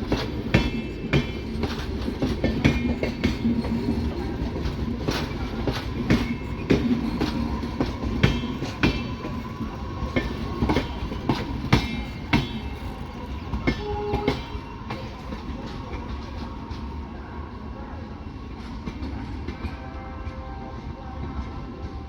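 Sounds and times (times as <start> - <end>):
train wheels clattering over joints: 0.0 - 16.8
train rumble: 0.0 - 22.0.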